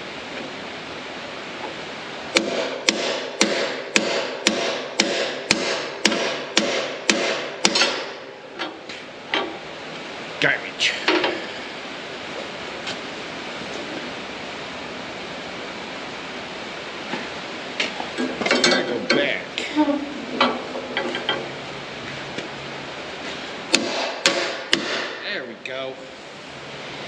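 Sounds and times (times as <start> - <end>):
steady hiss: 0.0 - 27.0
sharp metal strikes: 2.3 - 8.3, 23.7 - 25.3
metallic clicks and knocks: 18.2 - 19.3, 20.4 - 21.5.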